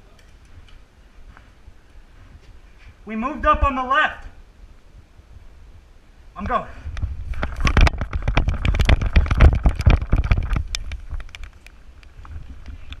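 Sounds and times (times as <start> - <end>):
microphone handling rumble: 6.4 - 13.0
running footsteps: 7.0 - 13.0.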